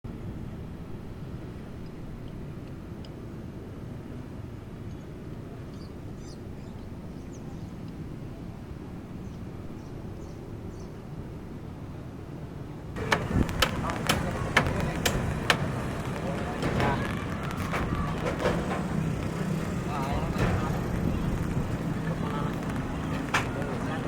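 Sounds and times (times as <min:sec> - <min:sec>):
low outdoor rumble: 0:13.0 - 0:24.0
sharp knocks: 0:13.0 - 0:24.0
voices: 0:13.0 - 0:24.0.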